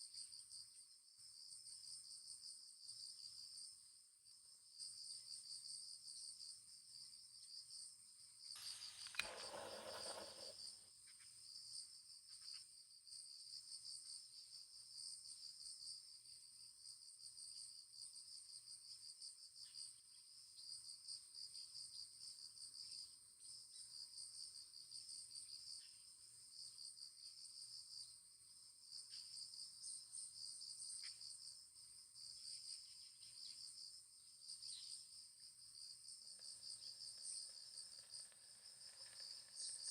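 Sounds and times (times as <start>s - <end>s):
crickets chirring: 4.8s - 15.8s, 21.6s - 39.9s
sharp click: 8.6s - 10.6s.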